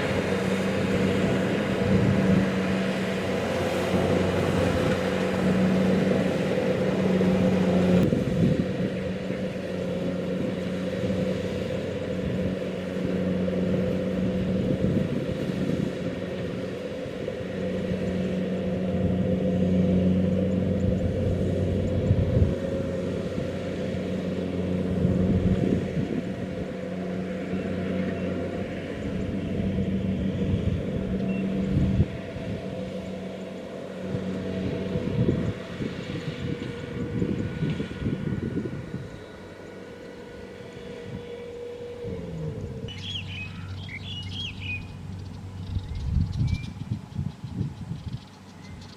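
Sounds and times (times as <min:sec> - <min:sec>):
combine harvester engine running: 0:00.0 - 0:48.9.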